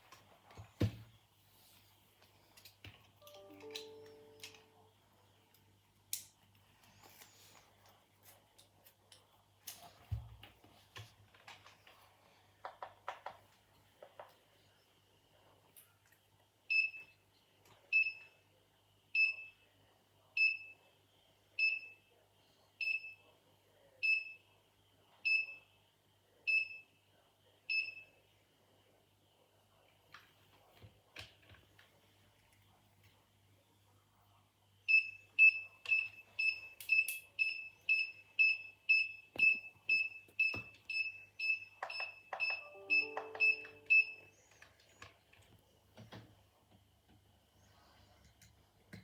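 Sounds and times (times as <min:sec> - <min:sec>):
alarm beeper short high beeps: 0:42.5 - 0:44.2.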